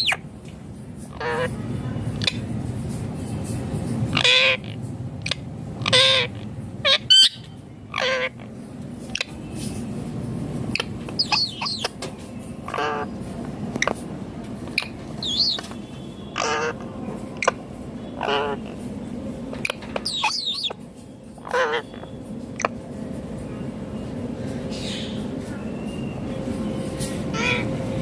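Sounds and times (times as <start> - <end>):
parakeet squawking: 0.0 - 0.3, 1.1 - 1.6, 2.2 - 2.5, 4.1 - 9.4, 10.7 - 12.0, 12.6 - 13.2, 14.7 - 18.9, 19.6 - 22.8, 27.3 - 27.8
bird chirps and whistles: 10.8 - 11.9, 14.8 - 16.5, 20.0 - 20.8.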